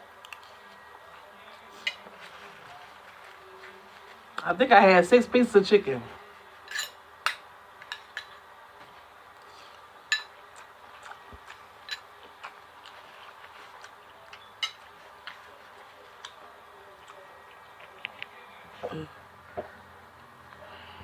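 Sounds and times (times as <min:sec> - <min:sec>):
cutlery clicking on plate: 0:10.1 - 0:10.3, 0:11.9 - 0:12.1
chewing: 0:10.5 - 0:19.0.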